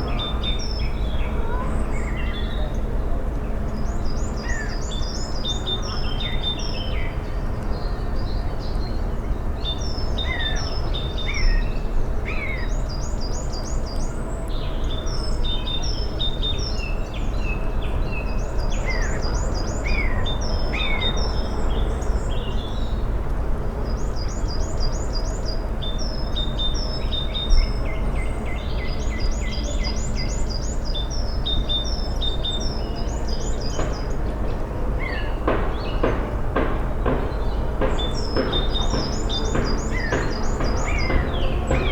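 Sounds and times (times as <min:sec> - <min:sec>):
birds chirping and whistling: 0:37.1 - 0:41.9.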